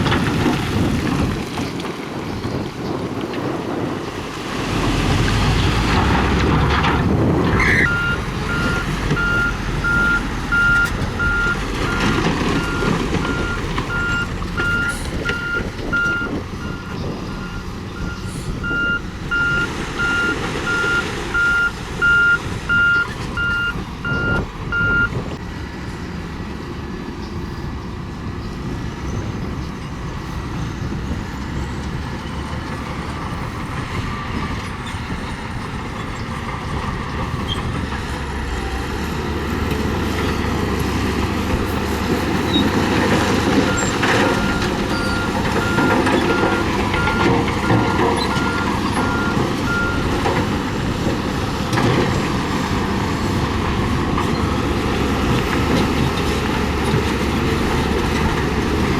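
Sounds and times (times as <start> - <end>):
heavy diesel machinery running: 0.0 - 58.9
reversing alarm beeping: 7.7 - 25.1, 43.6 - 50.2.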